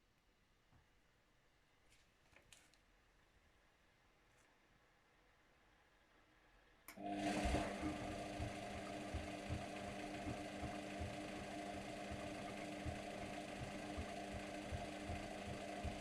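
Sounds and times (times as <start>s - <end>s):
washing machine motor humming: 6.9s - 16.0s.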